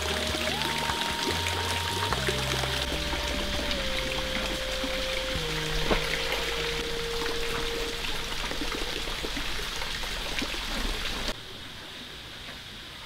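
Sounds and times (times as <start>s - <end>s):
held music note: 0.0s - 8.8s
water rushing and splashing: 0.0s - 11.4s.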